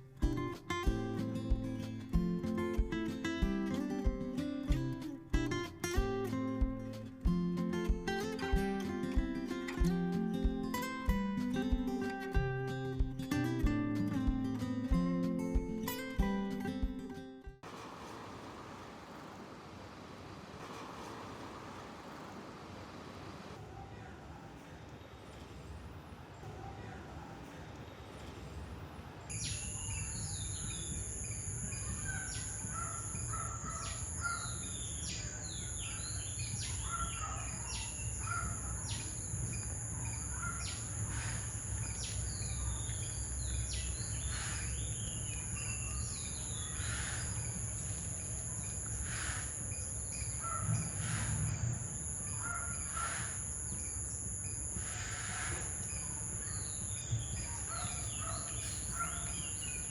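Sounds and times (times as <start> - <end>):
bird chirps and calls: 29.3 - 59.9
high-pitched insect drone: 29.3 - 59.9.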